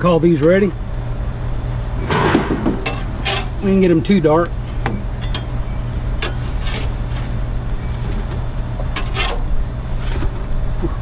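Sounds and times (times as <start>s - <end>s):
low rumble: 0.8s - 6.2s
metal spatula scraping griddle: 2.8s - 3.7s, 6.2s - 8.4s, 9.0s - 10.3s.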